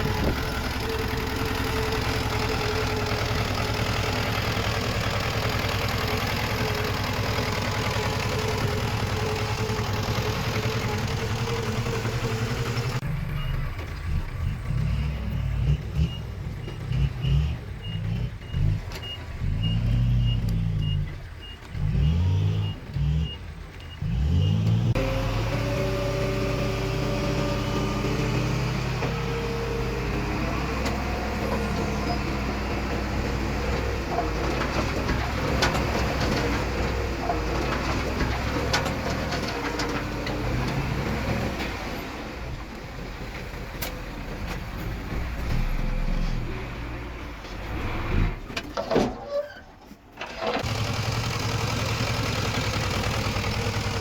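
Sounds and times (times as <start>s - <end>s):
diesel engine revving: 0.0s - 48.7s, 50.3s - 54.0s
rattling and clanking: 30.4s - 41.8s.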